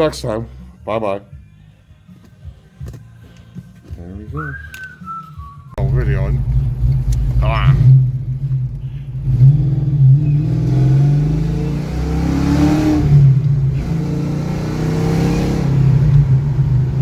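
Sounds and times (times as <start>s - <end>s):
car engine accelerating: 5.8s - 17.0s.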